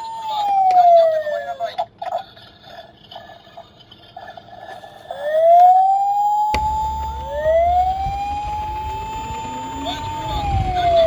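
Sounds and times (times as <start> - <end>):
toy electronic siren wailing: 0.0 - 1.9, 5.1 - 11.0
steady low rumble: 6.6 - 11.0.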